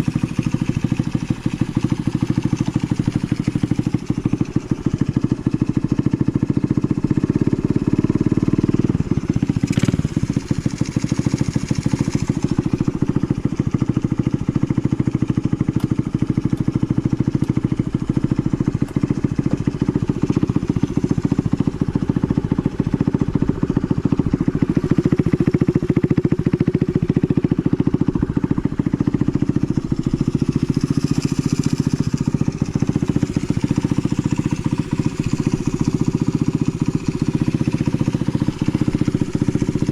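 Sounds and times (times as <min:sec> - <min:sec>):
small engine idling: 0:00.0 - 0:39.9.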